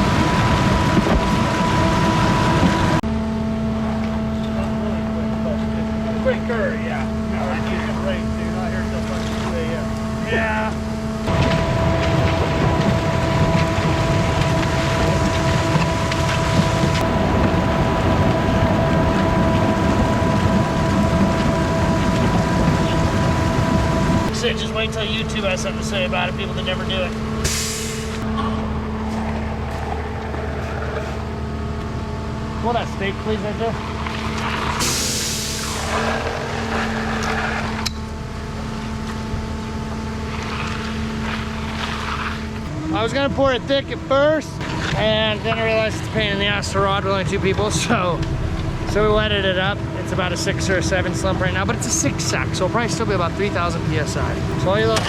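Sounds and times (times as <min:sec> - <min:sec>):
truck engine running: 0:00.0 - 0:55.0
rushing noise: 0:10.4 - 0:30.9, 0:42.5 - 0:55.0.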